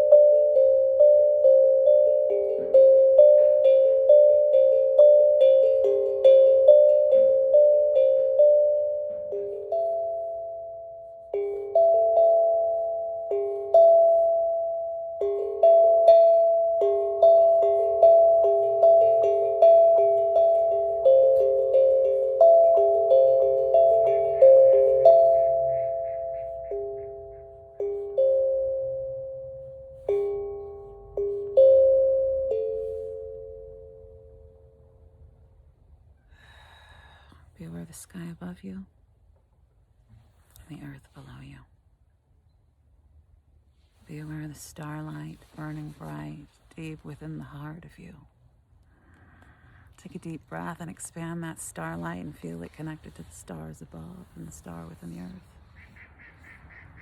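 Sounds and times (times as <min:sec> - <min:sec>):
steel tongue drum notes: 0:00.0 - 0:35.3, 0:44.1 - 0:48.2, 0:50.0 - 0:55.7.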